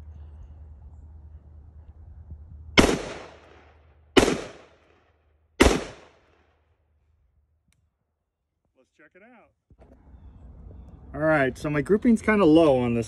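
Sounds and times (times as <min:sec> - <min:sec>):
rifle shots with echo: 0:02.8 - 0:06.5.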